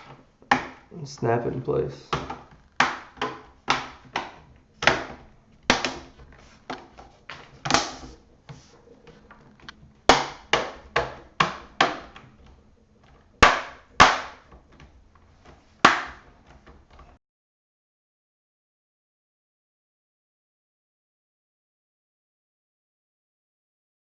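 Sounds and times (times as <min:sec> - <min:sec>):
plastic clips snapping into place: 0:02.1 - 0:08.2.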